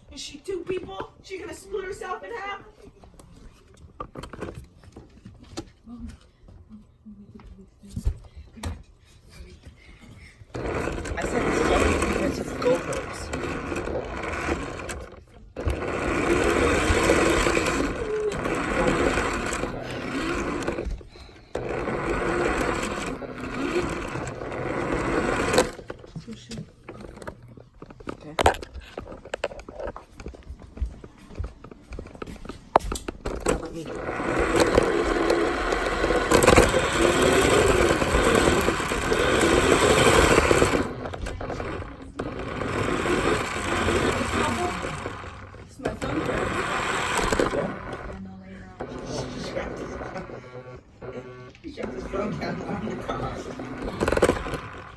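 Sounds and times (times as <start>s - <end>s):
toy car electric motor running: 10.4s - 27.5s, 32.9s - 54.9s
wheels rattling over ground: 10.5s - 27.5s, 33.2s - 48.2s, 51.7s - 54.9s.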